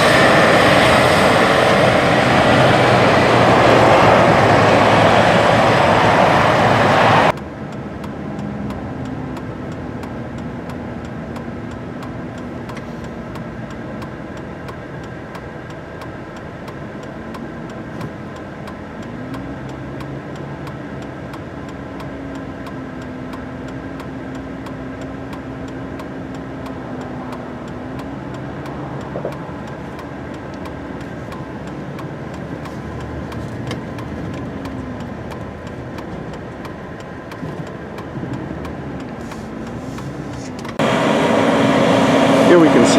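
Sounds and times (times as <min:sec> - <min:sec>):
loud rush of noise: 0:00.0 - 0:07.3, 0:40.4 - 0:42.9
diesel engine running: 0:00.0 - 0:42.9.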